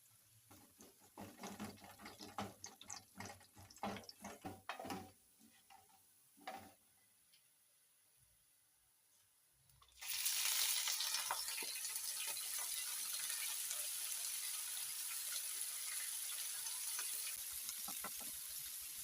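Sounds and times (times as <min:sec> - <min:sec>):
food sizzling in hot oil: 0:10.0 - 0:19.0.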